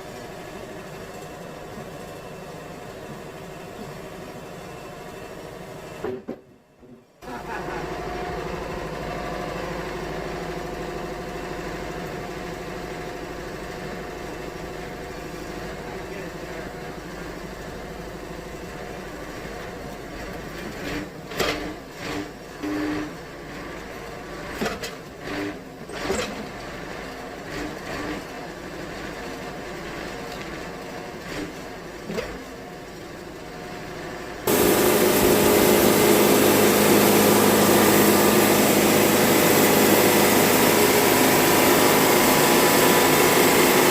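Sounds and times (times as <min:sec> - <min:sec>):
sawmill engine running: 0:07.2 - 0:20.8, 0:33.9 - 0:43.9.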